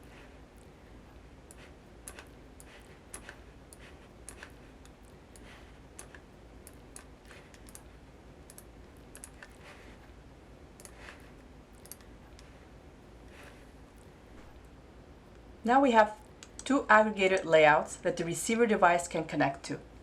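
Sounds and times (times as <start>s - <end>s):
keyboard and mouse clicking: 1.5s - 7.9s, 8.5s - 9.6s, 11.8s - 12.5s.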